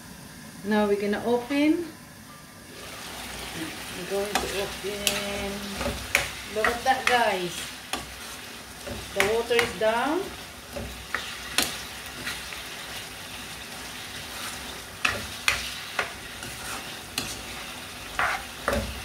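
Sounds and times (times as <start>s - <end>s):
food sizzling in a pan: 2.6s - 19.0s
utensil scraping a pan: 4.1s - 19.0s.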